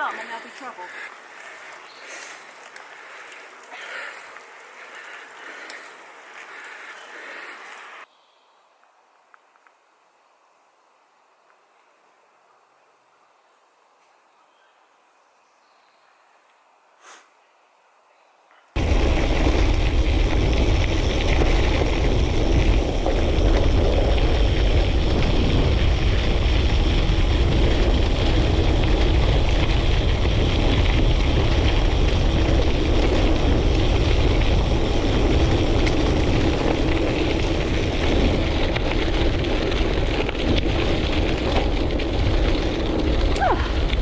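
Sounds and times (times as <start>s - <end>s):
tyres rolling on gravel: 0.0s - 8.1s, 18.8s - 44.0s
wind rushing over microphone: 18.8s - 44.0s.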